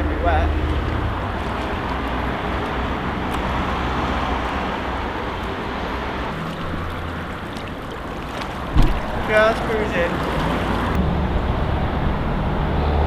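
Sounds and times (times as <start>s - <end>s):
water washing: 0.4s - 11.0s
wind noise on microphone: 8.6s - 13.0s.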